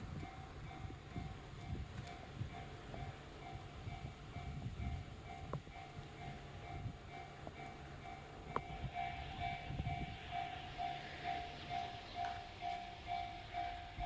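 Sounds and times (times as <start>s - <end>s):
level-crossing electronic bell: 8.1s - 14.0s.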